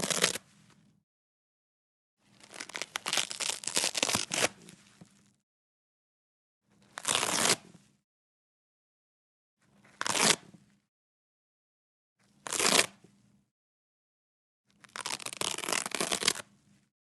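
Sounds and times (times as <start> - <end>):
velcro ripping: 0.0 - 0.4, 2.4 - 4.8, 7.0 - 7.6, 10.0 - 10.4, 12.4 - 13.0, 14.8 - 16.5.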